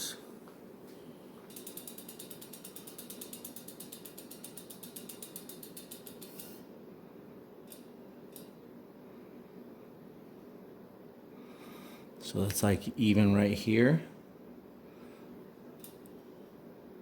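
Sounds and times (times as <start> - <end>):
bicycle freewheel clicking rapidly: 1.5 - 6.6.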